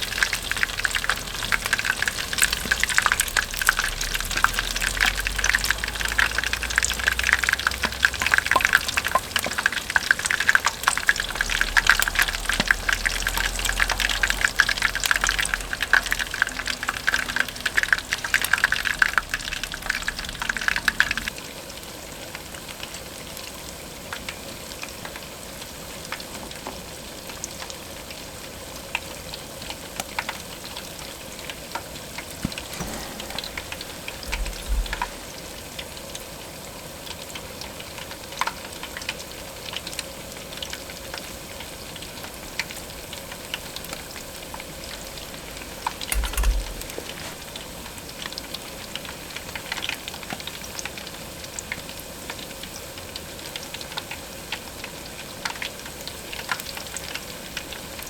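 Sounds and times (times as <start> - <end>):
food sizzling in hot oil: 0.0 - 21.3, 32.4 - 35.8
oil popping: 0.0 - 21.3, 32.4 - 35.8, 44.0 - 47.5.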